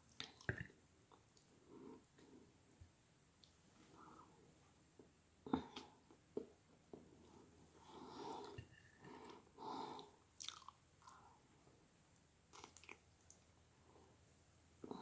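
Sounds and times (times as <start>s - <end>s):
person chewing: 10.0s - 10.8s, 12.5s - 13.0s
wet mouth clicks and smacks: 10.4s - 10.8s, 12.5s - 13.4s.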